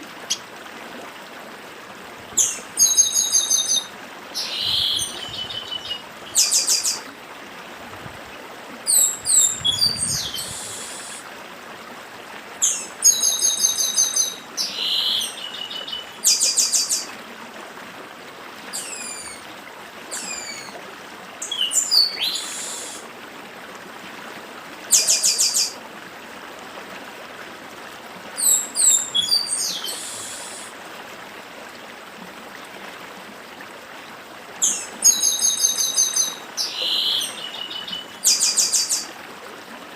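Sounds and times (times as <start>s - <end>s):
stream rushing: 0.0s - 39.9s
bird whistles and trills: 2.4s - 7.0s, 8.9s - 11.2s, 12.6s - 17.1s, 18.7s - 19.4s, 20.1s - 20.8s, 21.4s - 23.0s, 28.4s - 30.7s, 34.6s - 39.1s.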